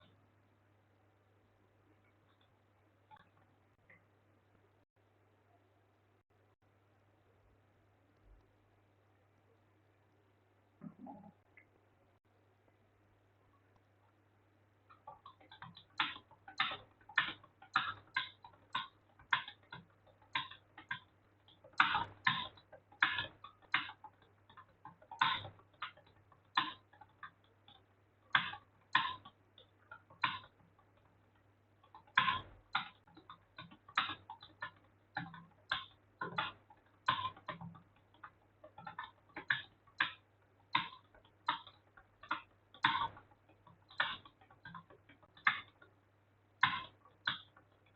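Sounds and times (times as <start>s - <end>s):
fast typing on keyboard: 14.9s - 47.9s.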